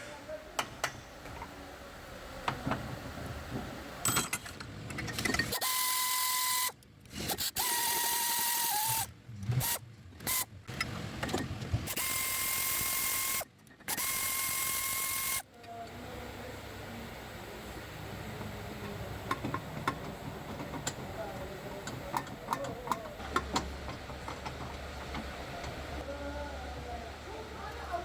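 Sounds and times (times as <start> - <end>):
power tool whining: 11.9 - 15.4
clicks and knocks of hand work: 21.8 - 25.8.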